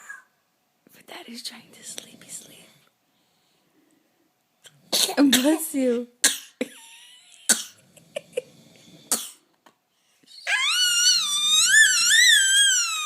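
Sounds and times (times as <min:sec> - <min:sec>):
baby squealing: 0:10.3 - 0:13.0.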